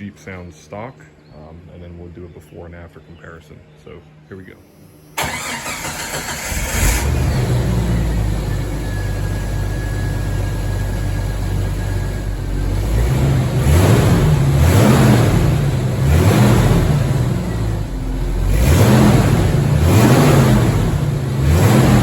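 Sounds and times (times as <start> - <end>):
car engine idling and revving: 5.2 - 22.0.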